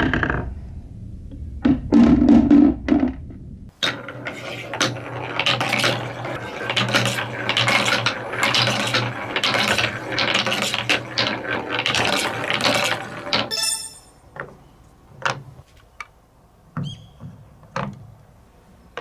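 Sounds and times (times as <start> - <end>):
marbles clattering down plastic track: 3.7 - 14.1.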